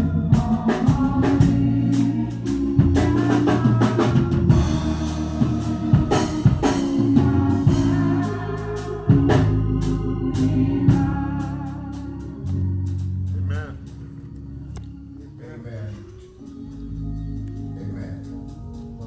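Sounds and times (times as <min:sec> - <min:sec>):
drum kit beat: 0:00.0 - 0:14.1
bass line: 0:00.0 - 0:19.0
organ sustained chords: 0:00.0 - 0:19.0.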